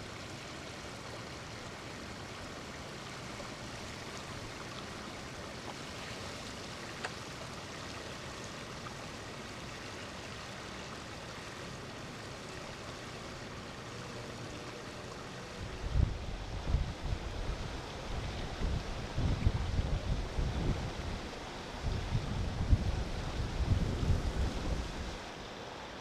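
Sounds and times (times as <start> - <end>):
wind gusts buffeting microphone: 15.6 - 25.3.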